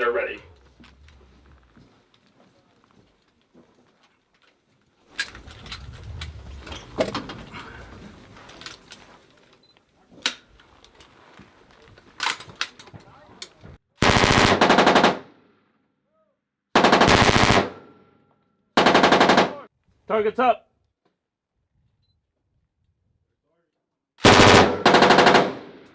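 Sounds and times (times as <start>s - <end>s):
machine gun automatic fire: 14.0s - 15.3s, 16.8s - 17.9s, 18.8s - 19.7s, 24.2s - 25.9s.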